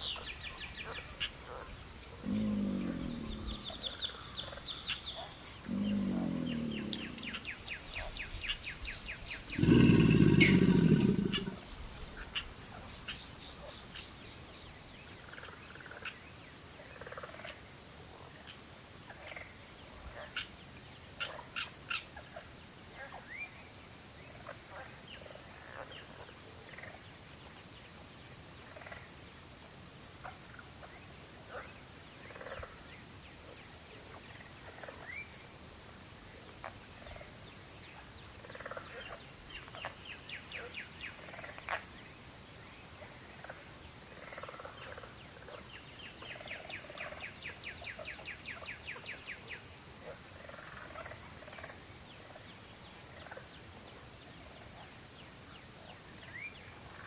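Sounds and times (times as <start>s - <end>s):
crickets trilling: 0.0s - 57.0s
short low pitched calls: 2.2s - 4.0s, 5.7s - 7.6s, 9.5s - 11.7s.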